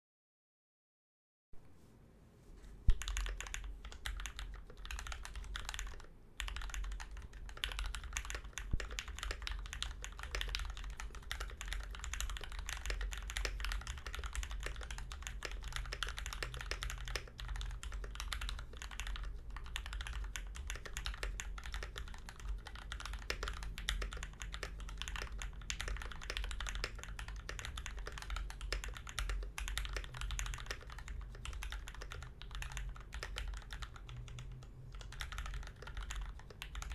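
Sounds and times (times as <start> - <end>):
mechanical keyboard typing: 2.9 - 36.9.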